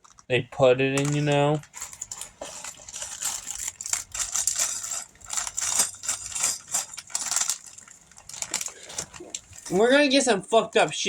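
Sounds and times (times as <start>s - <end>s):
plastic bricks clattering: 0.9s - 9.8s.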